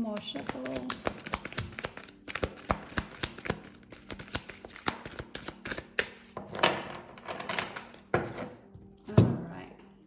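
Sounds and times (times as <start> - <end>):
cards shuffling clicks: 0.2 - 8.1
rustle of cards: 0.4 - 6.2.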